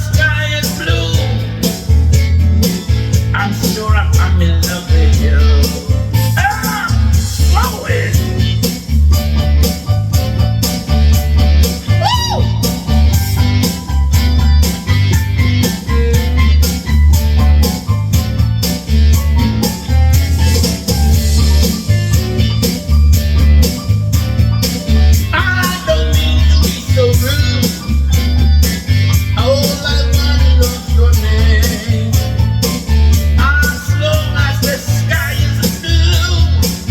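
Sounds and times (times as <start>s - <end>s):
person singing: 0.0s - 1.6s, 3.4s - 8.6s, 11.9s - 13.1s, 25.2s - 27.9s, 29.3s - 32.4s, 33.3s - 36.9s
blues song: 0.0s - 36.9s.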